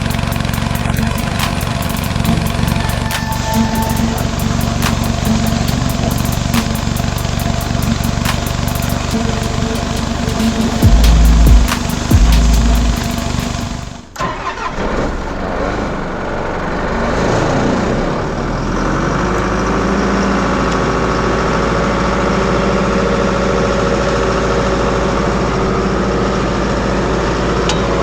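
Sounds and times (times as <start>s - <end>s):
diesel compressor engine running: 0.0s - 14.0s.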